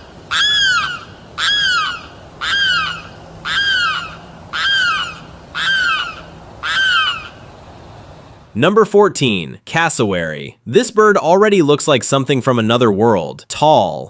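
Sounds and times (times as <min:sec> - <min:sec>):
bird wailing call: 0:00.0 - 0:07.5.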